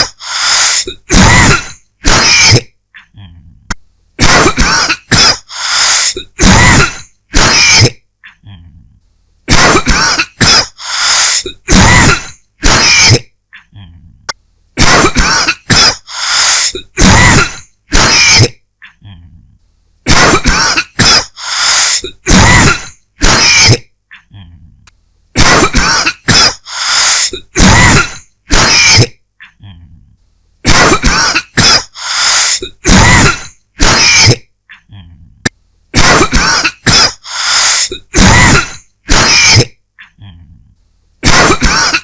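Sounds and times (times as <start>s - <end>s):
person dry coughing: 0.0s - 2.8s, 4.2s - 8.0s, 9.5s - 13.3s, 14.8s - 18.6s, 20.1s - 23.9s, 25.4s - 29.2s, 30.7s - 34.5s, 36.0s - 39.8s, 41.2s - 42.0s.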